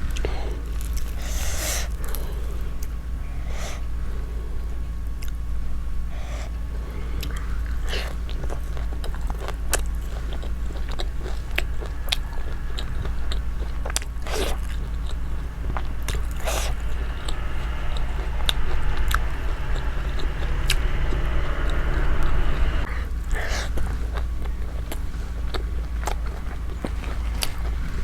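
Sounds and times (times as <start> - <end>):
low hum: 0.0 - 28.0
breathy sounds: 9.2 - 23.7.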